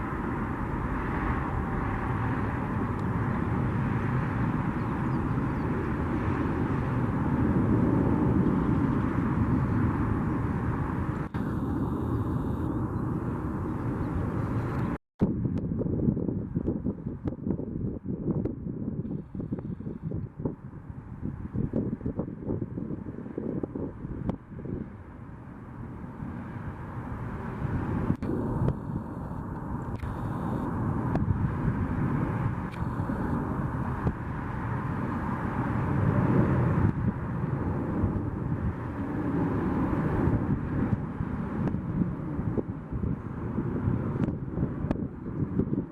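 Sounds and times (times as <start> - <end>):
airliner engine rumble: 0.0 - 45.9
faint high whine: 11.0 - 15.0, 25.5 - 39.6.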